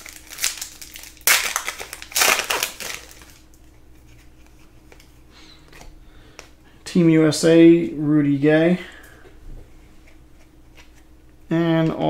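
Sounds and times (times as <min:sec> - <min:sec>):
wrapper crinkling: 0:00.0 - 0:04.2.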